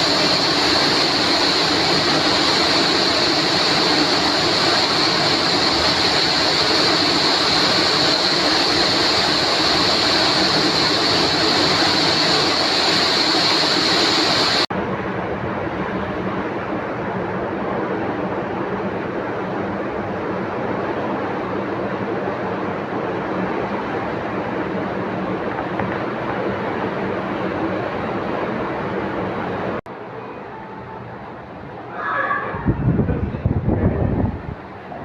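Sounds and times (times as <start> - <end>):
rushing water with hiss: 0.0 - 14.7
soft wash of surf: 0.0 - 14.7.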